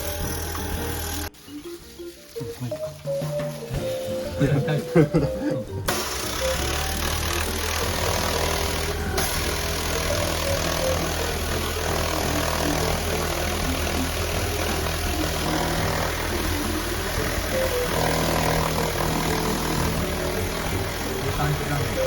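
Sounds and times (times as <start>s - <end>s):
pressure washer motor drone: 0.0s - 1.3s, 5.9s - 22.0s
water spray hissing: 5.9s - 22.0s.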